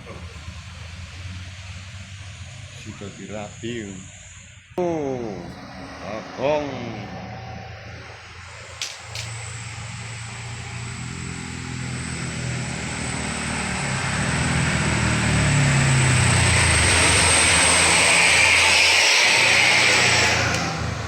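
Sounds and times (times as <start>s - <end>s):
diesel engine approaching: 0.0s - 21.0s
high thin tone: 4.8s - 11.2s.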